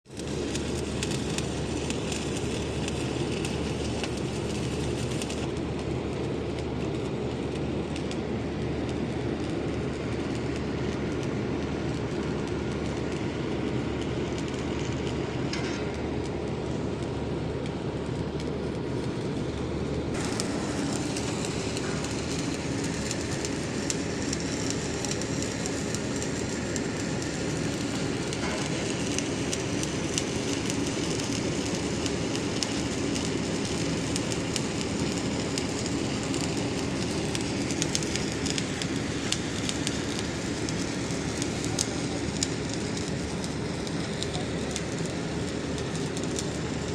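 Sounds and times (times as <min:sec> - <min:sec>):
welding arc crackling: 0:00.1 - 0:46.9
low constant hum: 0:00.2 - 0:46.9.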